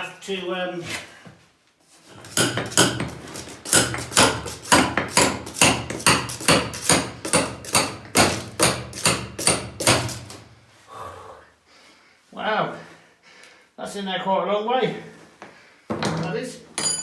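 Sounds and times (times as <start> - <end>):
hammer blows: 2.1 - 10.5.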